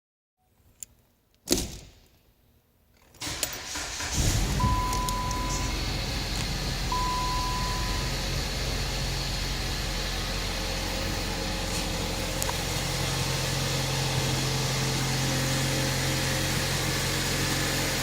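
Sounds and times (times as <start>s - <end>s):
car engine starting and idling: 3.2s - 18.0s
long beeps: 4.5s - 6.2s, 6.8s - 8.6s.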